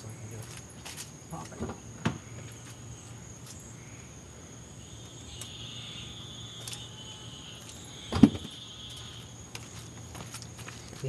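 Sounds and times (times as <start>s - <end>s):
night insects chirring: 0.0s - 11.0s
sharp thump: 8.1s - 8.5s.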